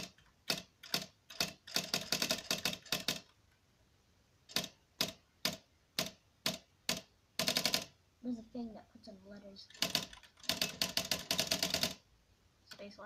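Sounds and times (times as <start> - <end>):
electric typewriter clacking: 0.0 - 3.3, 4.5 - 7.9, 9.7 - 12.0.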